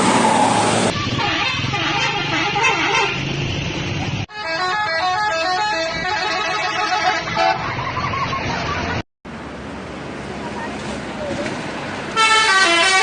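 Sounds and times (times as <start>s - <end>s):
bus engine: 0.0s - 13.0s
street noise: 0.0s - 13.0s
multi-tone musical bus horn: 0.9s - 3.3s, 4.3s - 7.7s, 12.2s - 13.0s.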